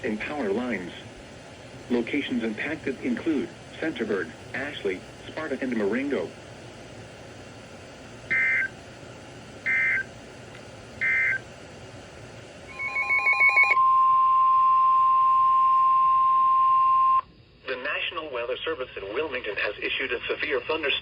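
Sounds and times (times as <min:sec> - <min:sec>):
steady weather alert tone: 0:08.3 - 0:08.7, 0:11.0 - 0:11.4.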